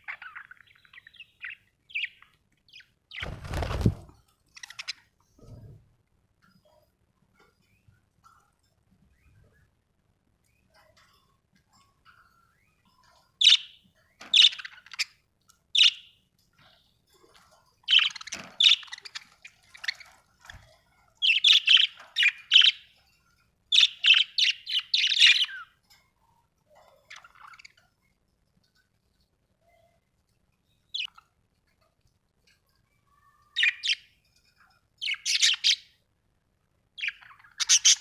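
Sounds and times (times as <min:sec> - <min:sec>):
budgerigars chirping: 0:13.4 - 0:15.1, 0:15.8 - 0:16.1, 0:21.2 - 0:22.9, 0:23.7 - 0:25.6, 0:33.6 - 0:34.0, 0:35.0 - 0:35.9, 0:37.0 - 0:38.0.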